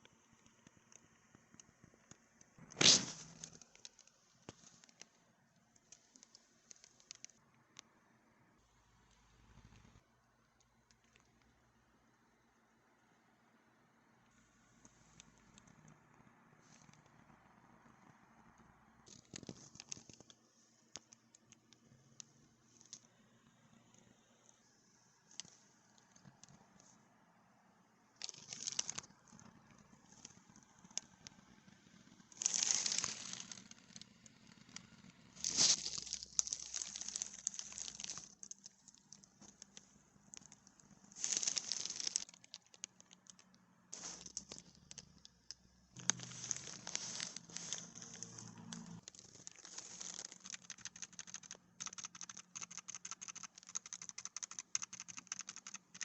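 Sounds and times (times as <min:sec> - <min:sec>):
packaging crinkling and rustling: 0:02.6 - 0:07.4, 0:19.1 - 0:21.6, 0:28.2 - 0:29.5, 0:32.3 - 0:34.1, 0:35.4 - 0:56.0
rapid typing on keyboard: 0:28.2 - 0:31.6, 0:40.4 - 0:43.6, 0:47.4 - 0:56.0.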